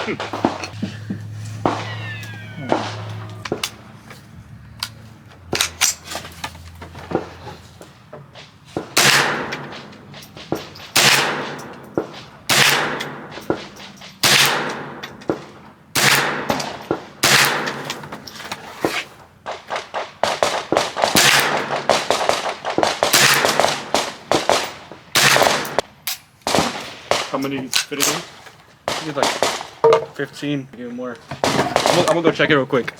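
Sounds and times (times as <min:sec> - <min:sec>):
gunshots with echo: 0:00.0 - 0:01.0, 0:01.6 - 0:03.9, 0:08.4 - 0:18.1, 0:19.4 - 0:25.9, 0:26.5 - 0:27.5, 0:28.9 - 0:30.1, 0:31.4 - 0:32.3
quieter gun cracks: 0:02.6 - 0:03.8, 0:08.4 - 0:18.2, 0:19.4 - 0:30.1.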